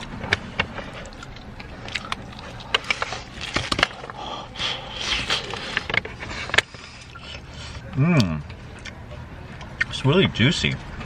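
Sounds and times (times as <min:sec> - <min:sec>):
crunching fried chicken: 0:00.0 - 0:07.4.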